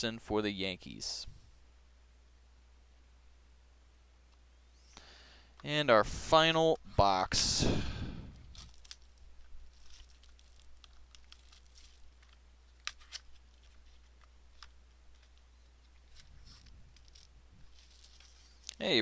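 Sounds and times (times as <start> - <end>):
box wrapping crinkling and tearing: 8.5 - 15.4, 16.0 - 18.8.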